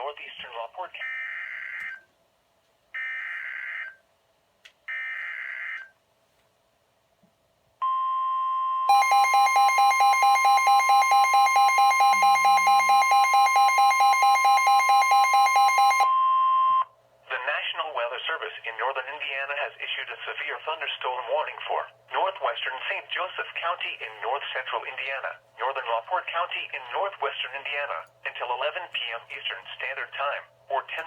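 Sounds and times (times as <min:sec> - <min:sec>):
steady warning alarm tone: 0:07.8 - 0:16.9
weather radio rapid beeping: 0:08.9 - 0:16.7.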